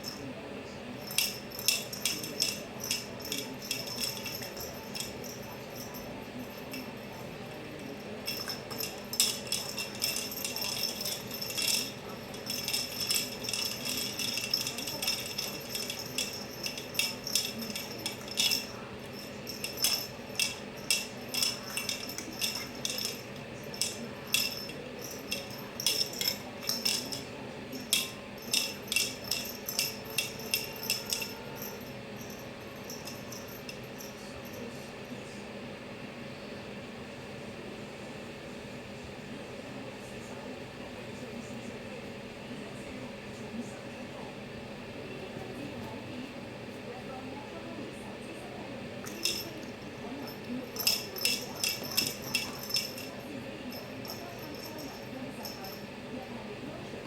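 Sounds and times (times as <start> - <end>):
jingle bell tinkling: 0.0 - 0.3, 1.0 - 34.8, 49.0 - 56.0.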